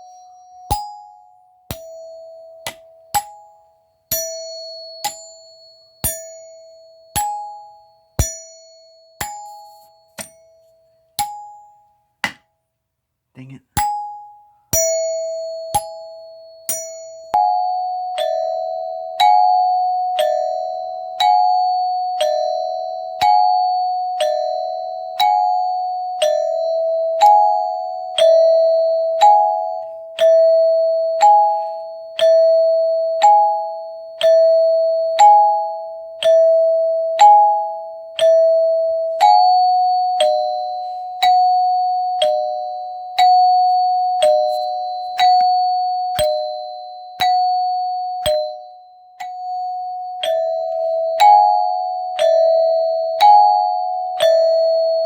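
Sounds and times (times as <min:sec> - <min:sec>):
doorbell chime ding-dong: 0:13.9 - 0:55.0.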